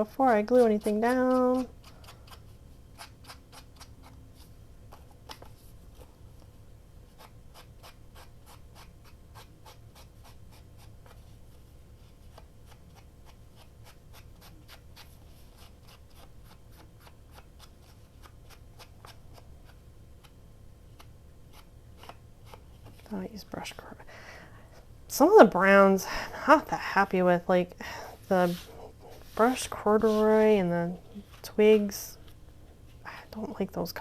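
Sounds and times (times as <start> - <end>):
soft rubbing on paper: 7.1 - 19.8, 28.2 - 32.4.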